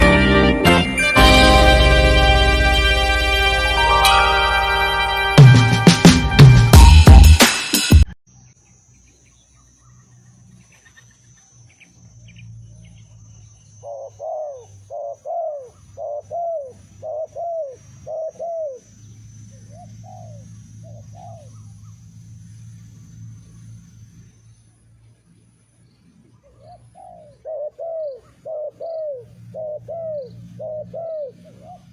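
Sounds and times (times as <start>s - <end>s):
low hum: 0.0s - 7.4s
music intro: 0.0s - 8.2s
dove cooing: 13.8s - 18.9s, 19.5s - 21.7s, 26.4s - 31.9s
faint high whine: 16.8s - 26.8s.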